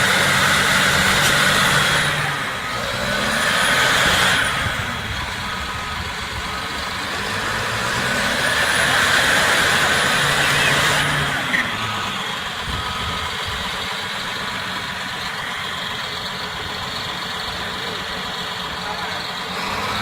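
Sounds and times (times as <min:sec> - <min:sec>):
heavy diesel engines running: 0:00.0 - 0:20.0
high engine whine: 0:00.0 - 0:20.0.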